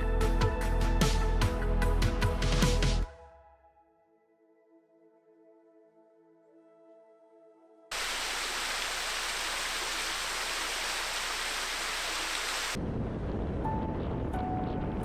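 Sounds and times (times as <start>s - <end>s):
faint ambient music: 0.0s - 7.9s, 12.8s - 15.0s
loud rushing hiss: 7.9s - 12.8s.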